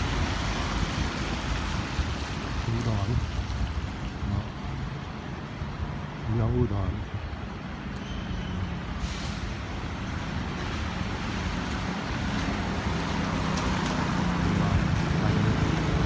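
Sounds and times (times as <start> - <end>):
road noise: 0.0 - 16.0
vehicle engine hum: 2.5 - 7.4.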